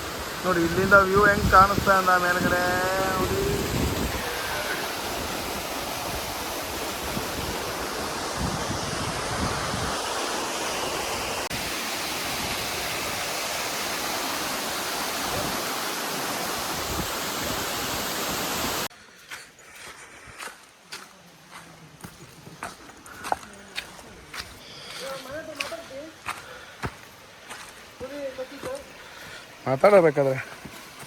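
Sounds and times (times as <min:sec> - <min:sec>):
waterfall rushing: 0:00.0 - 0:18.9.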